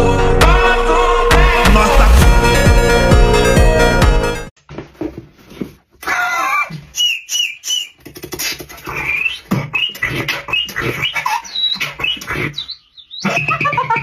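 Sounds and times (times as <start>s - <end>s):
person beatboxing: 8.0s - 12.6s.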